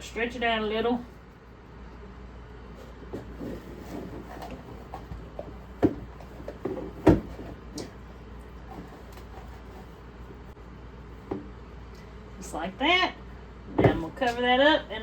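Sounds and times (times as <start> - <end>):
soft rustling and shuffling: 2.6 - 11.3.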